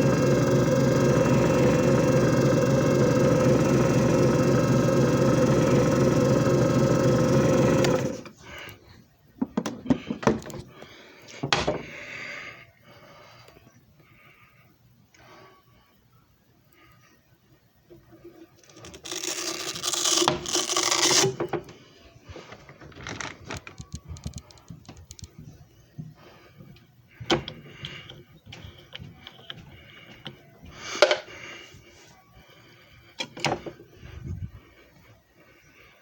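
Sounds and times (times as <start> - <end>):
disc repair machine whirring: 0.0 - 8.4.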